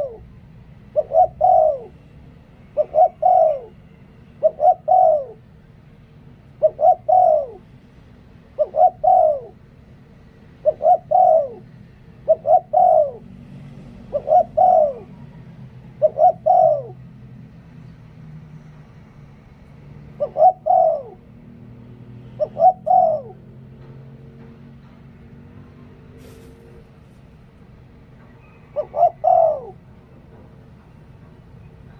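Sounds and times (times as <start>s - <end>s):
dove cooing: 0.0s - 2.0s, 2.8s - 3.8s, 4.4s - 5.5s, 6.6s - 7.7s, 8.5s - 9.6s, 10.6s - 13.3s, 14.0s - 17.0s, 20.2s - 21.3s, 22.3s - 23.5s, 28.4s - 29.8s.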